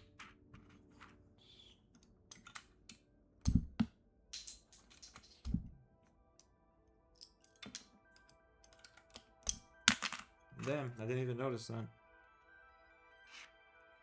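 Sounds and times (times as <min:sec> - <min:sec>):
keycaps clicking and tapping: 0:01.9 - 0:05.8, 0:07.2 - 0:10.8.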